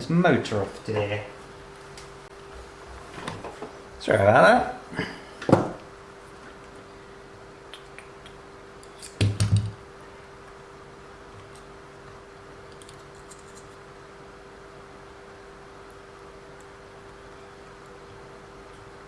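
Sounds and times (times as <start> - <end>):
faint steady hum: 0.0 - 19.0
knock on workbench: 5.5 - 5.8.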